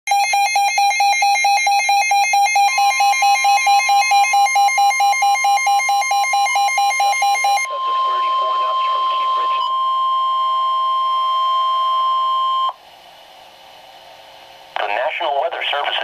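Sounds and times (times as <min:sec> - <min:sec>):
rapid alarm beeping: 0:00.1 - 0:12.8
steady warning alarm tone: 0:00.1 - 0:12.8.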